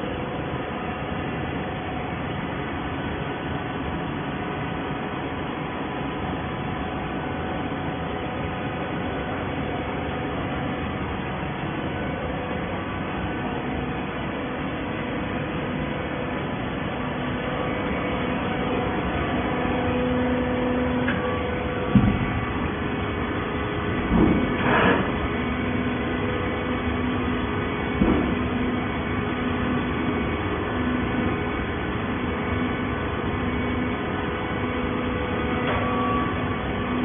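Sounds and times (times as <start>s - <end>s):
baler machine hum and whir: 0.0s - 37.0s
machine thump: 21.8s - 22.5s, 24.0s - 25.1s, 28.0s - 28.4s.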